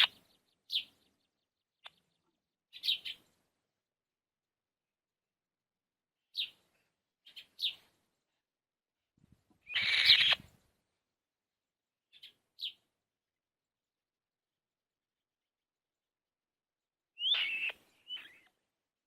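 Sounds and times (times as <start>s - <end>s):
young birds chirping: 0.0s - 3.4s, 6.3s - 6.6s, 7.2s - 7.9s, 9.6s - 10.7s, 17.2s - 18.6s.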